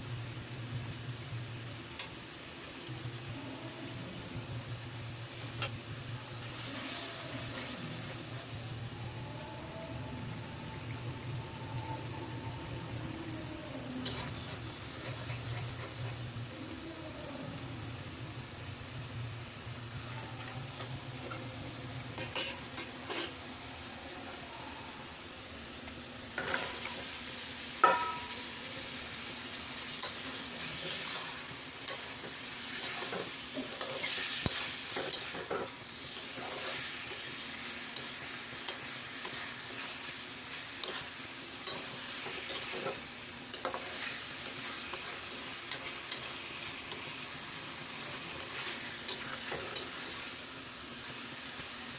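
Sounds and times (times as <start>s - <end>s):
curry sizzling in a pan: 0.0s - 9.2s, 9.9s - 51.9s
spoon scraping metal pan: 22.2s - 23.4s.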